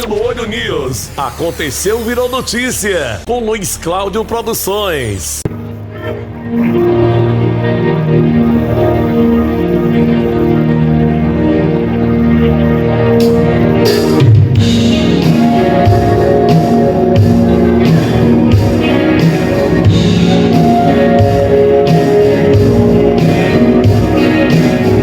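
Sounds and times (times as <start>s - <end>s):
held chords: 5.4s - 25.0s
band playing guitar and drums: 5.5s - 25.0s.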